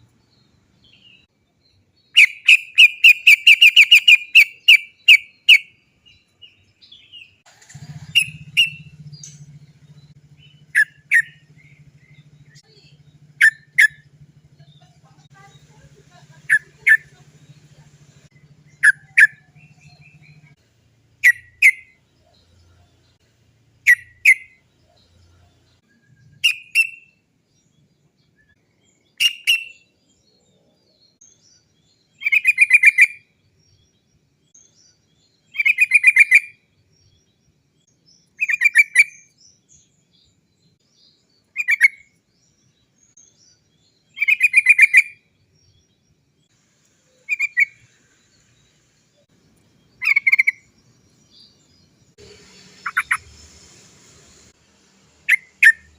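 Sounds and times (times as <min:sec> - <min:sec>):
bird calling: 0:02.1 - 0:05.8, 0:06.4 - 0:20.6, 0:23.8 - 0:25.0, 0:35.5 - 0:36.6, 0:41.4 - 0:42.2, 0:44.1 - 0:45.2, 0:47.1 - 0:48.5, 0:49.8 - 0:51.7, 0:52.8 - 0:53.4.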